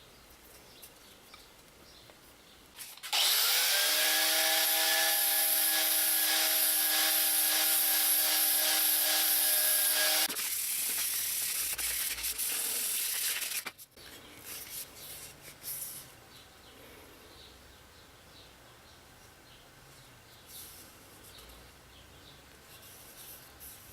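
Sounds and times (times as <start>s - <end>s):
power sander on metal: 3.1s - 10.3s.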